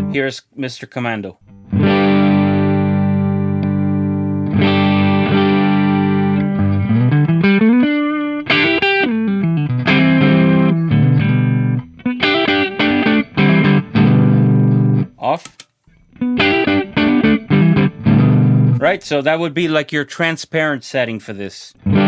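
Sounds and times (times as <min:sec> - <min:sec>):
clean electric guitar: 0:01.4 - 0:15.2, 0:15.9 - 0:18.9, 0:21.8 - 0:22.0.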